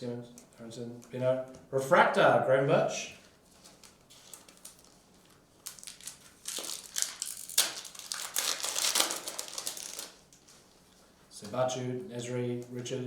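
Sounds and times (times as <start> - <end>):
foil wrappers crinkling: 3.2 - 10.9.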